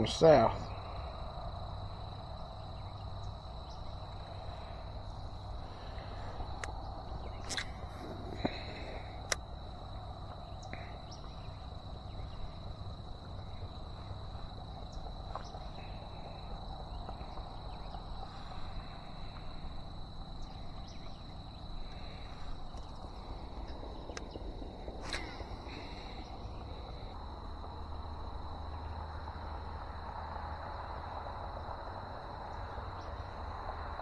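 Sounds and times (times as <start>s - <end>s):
insect trilling: 0.0s - 31.9s
highway traffic rumble: 0.0s - 34.0s
sharp clicks: 7.4s - 9.4s.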